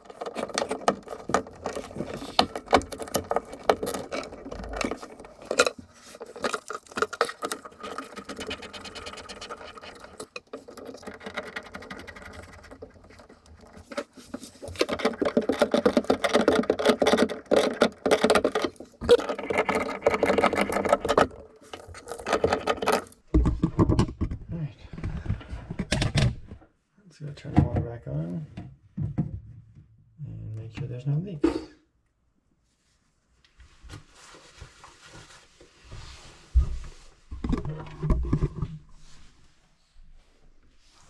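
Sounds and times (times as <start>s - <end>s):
clicking and scraping on plumbing: 0.0s - 24.3s.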